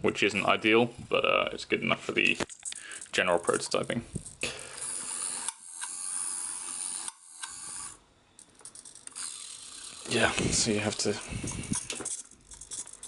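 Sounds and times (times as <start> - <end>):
small geared motor whirring: 4.8 - 8.0, 9.1 - 12.1.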